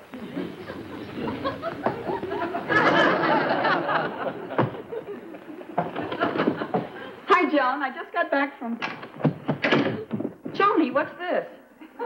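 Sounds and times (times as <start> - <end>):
audience laughing: 0.0 - 7.3.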